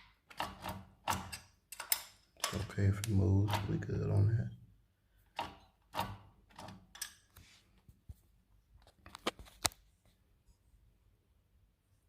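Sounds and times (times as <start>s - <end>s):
wrench clicking on metal bolt: 0.3s - 3.8s.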